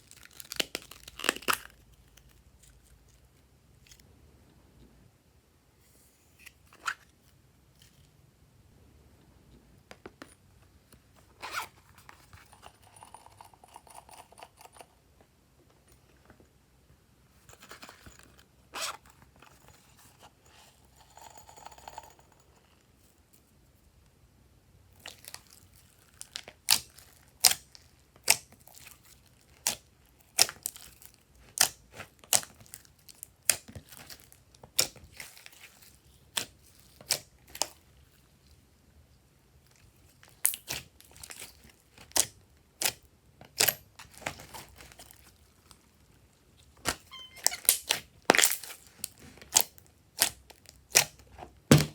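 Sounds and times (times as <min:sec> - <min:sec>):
slime stretching and squishing: 0:00.0 - 0:03.2.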